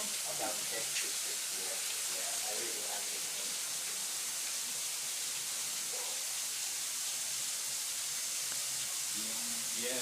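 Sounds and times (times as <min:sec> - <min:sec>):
high-pitched hiss: 0:06.7 - 0:10.0.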